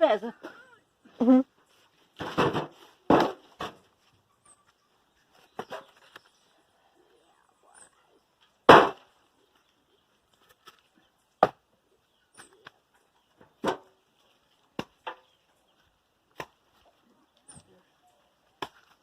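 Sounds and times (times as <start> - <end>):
firewood knocking onto pile: 2.2 - 3.9, 8.7 - 9.1.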